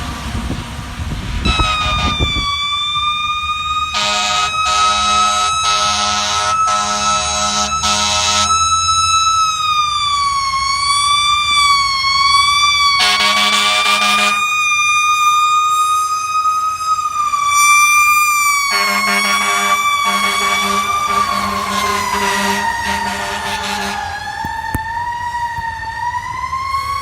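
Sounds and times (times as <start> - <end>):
fire truck siren wailing: 0.0 - 27.0
air horn blasts: 1.4 - 2.7, 3.9 - 8.9, 12.9 - 14.5, 17.5 - 24.8.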